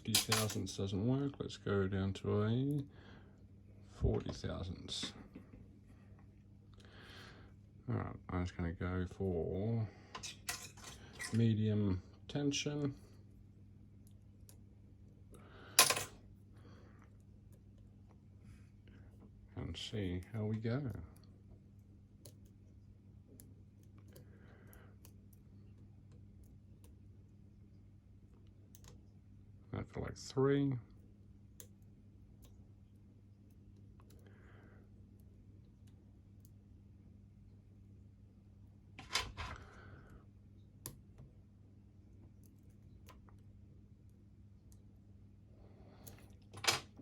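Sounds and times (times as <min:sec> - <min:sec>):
steady low hum: 0:00.0 - 0:47.0.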